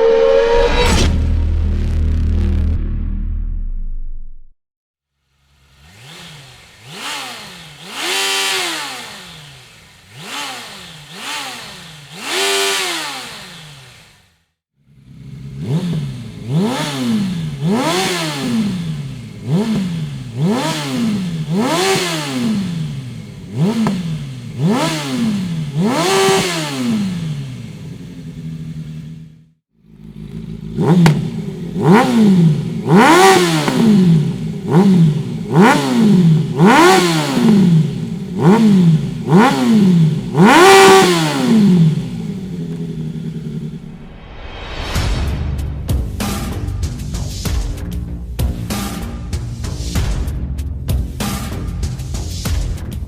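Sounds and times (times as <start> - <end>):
motorcycle engine revving: 5.1 - 44.5, 45.6 - 53.0
engine idling: 5.2 - 44.1.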